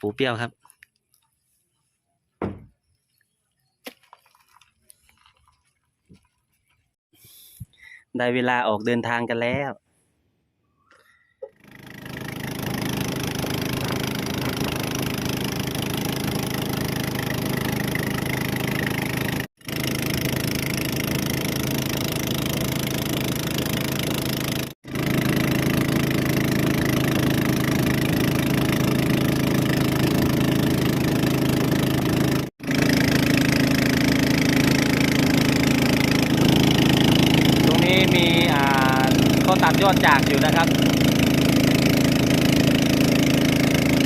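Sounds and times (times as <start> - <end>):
boat engine running: 11.5 - 44.0.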